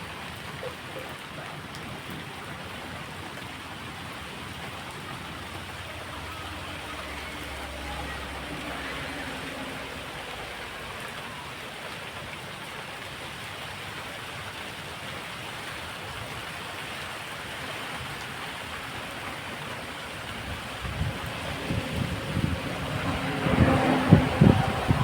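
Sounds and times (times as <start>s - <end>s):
heavy rain hissing: 1.9s - 12.3s, 17.5s - 25.0s
wind buffeting microphone: 19.5s - 25.0s.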